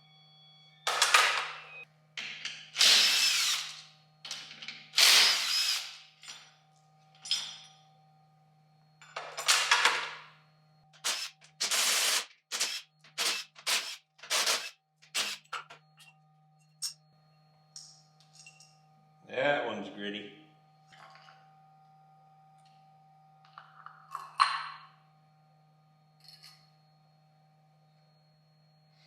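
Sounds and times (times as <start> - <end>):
cordless power drill whirring: 2.8 - 3.9, 5.0 - 6.0, 11.0 - 15.6.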